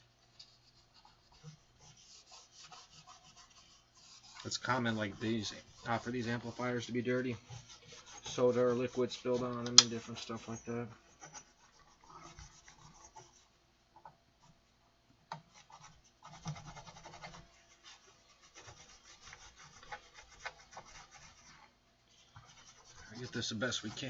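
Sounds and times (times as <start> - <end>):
hand scrubbing amplifier panel: 1.5 - 10.6, 22.3 - 24.0.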